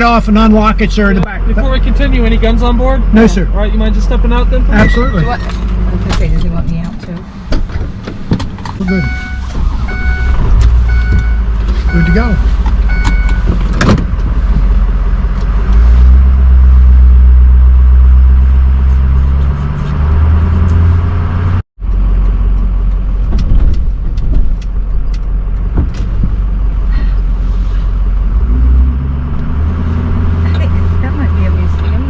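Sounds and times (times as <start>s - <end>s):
road noise: 0.0s - 32.0s
vehicle engine drone: 0.0s - 32.0s.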